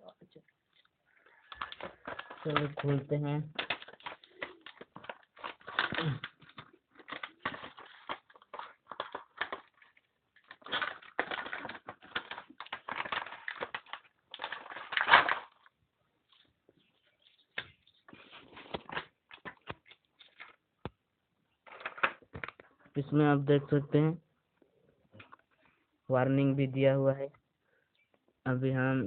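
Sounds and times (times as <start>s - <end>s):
packaging crinkling and rustling: 0.7s - 20.7s, 21.6s - 22.7s.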